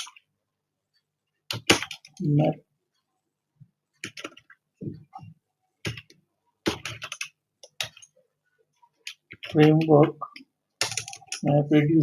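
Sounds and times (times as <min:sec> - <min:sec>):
keyboard typing: 0:00.0 - 0:00.3, 0:01.5 - 0:02.6, 0:03.9 - 0:08.2, 0:08.9 - 0:12.0.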